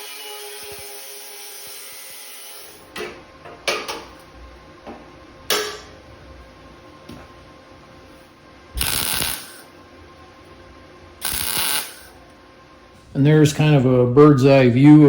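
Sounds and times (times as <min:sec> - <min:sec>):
power tool whine: 0:00.0 - 0:02.9, 0:08.8 - 0:09.7, 0:11.2 - 0:12.2.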